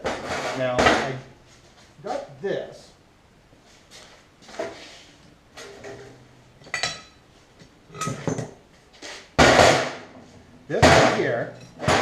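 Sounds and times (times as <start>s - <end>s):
heavy metal clunk: 10.8s - 12.0s.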